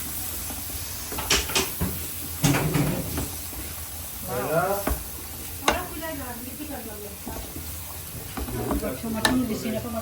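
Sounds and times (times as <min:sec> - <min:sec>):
kitchen clicks and knocks: 0:01.1 - 0:03.3.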